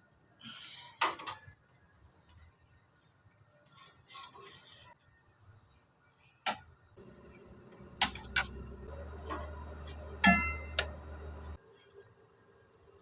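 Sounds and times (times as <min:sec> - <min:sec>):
steady low hum: 0:07.0 - 0:11.6.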